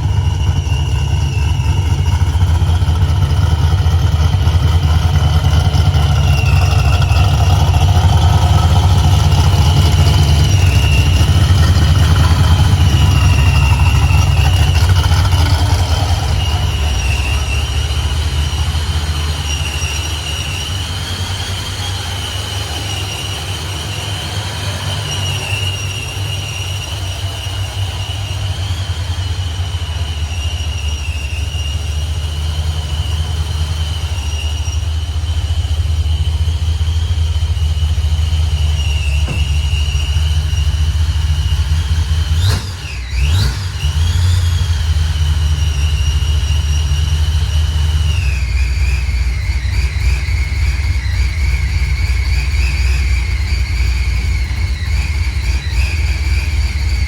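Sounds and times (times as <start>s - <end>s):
engine idling with whine: 0.0s - 57.0s.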